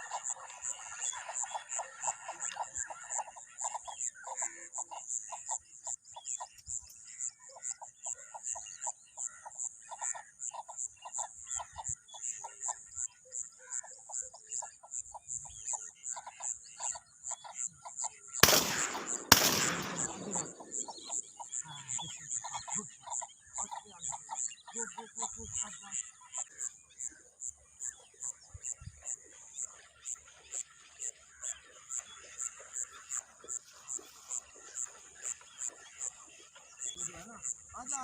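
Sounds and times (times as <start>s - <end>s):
shotgun shots with echo: 18.4s - 21.2s
short regular calls: 18.4s - 22.0s.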